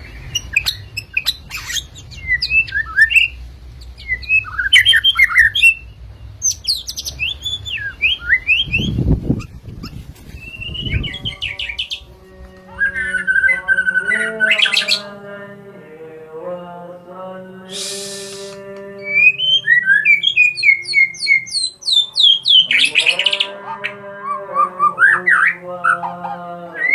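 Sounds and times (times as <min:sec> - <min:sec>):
bird singing whistles and chirps: 0:00.3 - 0:12.0, 0:17.7 - 0:23.4.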